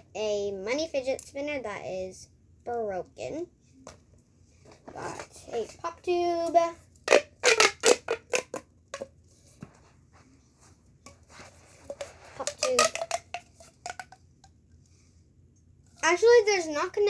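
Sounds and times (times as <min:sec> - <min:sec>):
plastic pop tube clicking: 0:07.1 - 0:09.1, 0:11.9 - 0:14.6.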